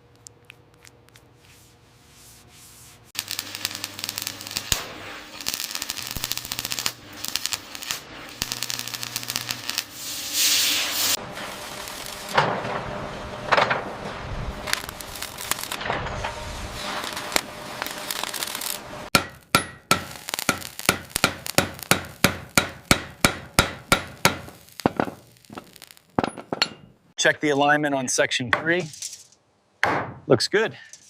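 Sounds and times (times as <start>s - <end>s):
metal clattering: 23.7s - 27.0s.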